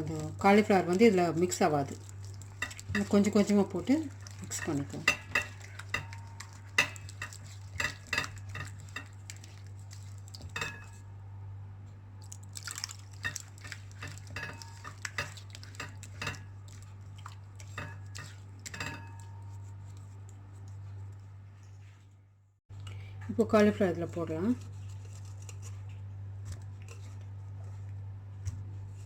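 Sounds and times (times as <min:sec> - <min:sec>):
spoon stirring batter: 0:00.0 - 0:11.0, 0:12.5 - 0:22.0, 0:23.5 - 0:29.0
spoon clinking against bowl: 0:04.5 - 0:09.2, 0:17.7 - 0:19.3.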